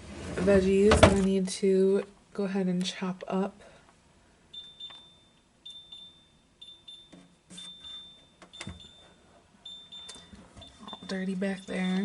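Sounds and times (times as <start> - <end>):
items knocking: 0.8 - 1.3
refrigerator alarm beeping: 4.5 - 12.0.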